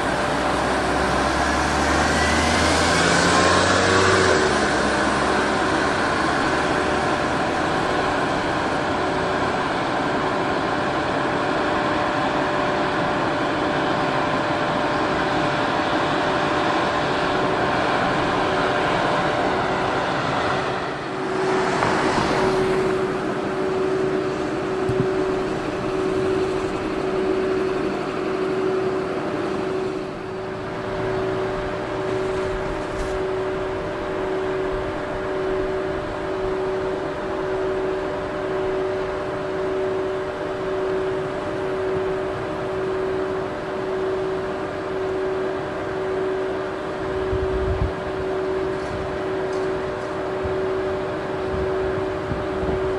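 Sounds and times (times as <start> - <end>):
train rumbling: 0.0 - 52.9
level crossing bell ringing: 21.2 - 52.9.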